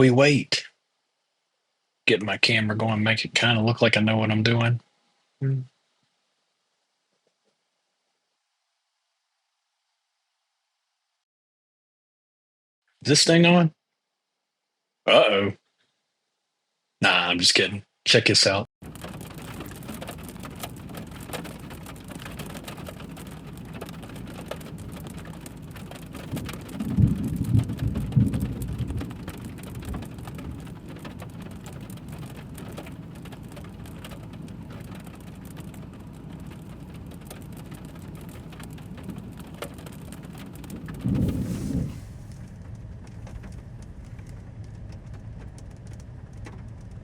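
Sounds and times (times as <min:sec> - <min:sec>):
rain pattering on a surface: 0:18.8 - 0:47.0
thunder rumbling: 0:18.8 - 0:47.0.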